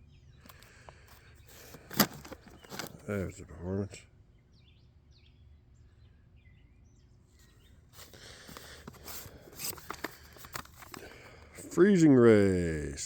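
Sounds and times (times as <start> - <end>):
packaging rustling and clicking: 0.4 - 3.1, 8.0 - 11.6.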